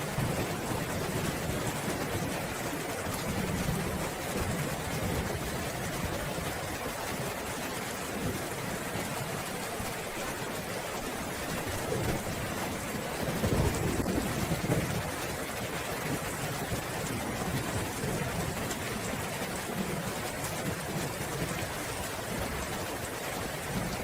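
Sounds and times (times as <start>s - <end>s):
rain falling: 0.0s - 24.0s
thunder rumble: 11.8s - 18.6s.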